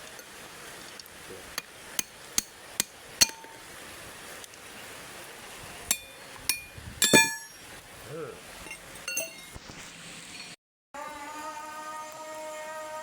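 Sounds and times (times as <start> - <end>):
hammer striking metal: 2.0 - 3.6, 5.9 - 7.6.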